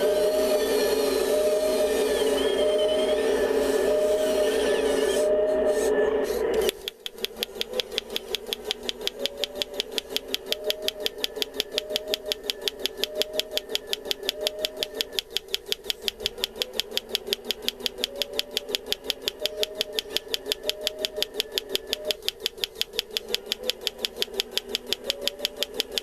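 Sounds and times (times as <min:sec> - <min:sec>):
steady motor hum: 0:00.0 - 0:26.0
breaker hammer pounding: 0:06.7 - 0:26.0.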